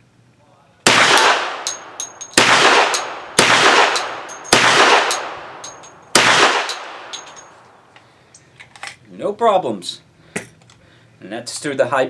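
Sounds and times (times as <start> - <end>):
pistol shots with echo: 0.9 - 7.5
small metallic clinks: 1.6 - 3.2, 3.8 - 9.0.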